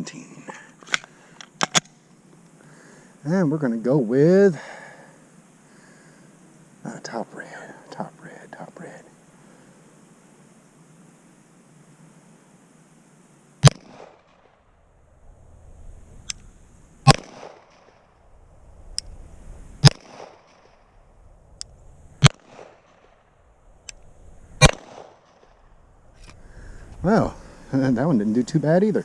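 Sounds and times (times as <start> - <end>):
faint sharp cracks: 16.2 - 18.1, 21.6 - 26.4
pistol shots with echo: 17.0 - 17.8, 24.6 - 25.2.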